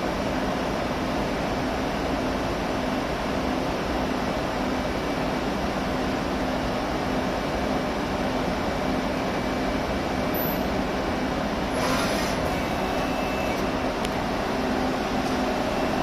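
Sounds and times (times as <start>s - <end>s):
lathe machine hum: 10.8s - 16.0s.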